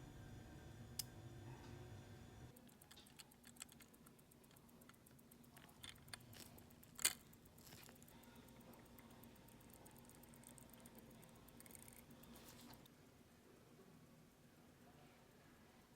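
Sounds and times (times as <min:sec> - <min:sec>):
small clicks and taps: 0:02.5 - 0:12.9
watch ticking: 0:02.5 - 0:12.9.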